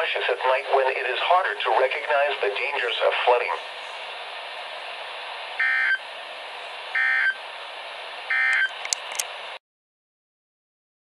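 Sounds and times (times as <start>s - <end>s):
radio receiver hiss: 0.0s - 9.6s
digital data tone bursts: 5.6s - 6.0s, 7.0s - 7.4s, 8.3s - 8.7s.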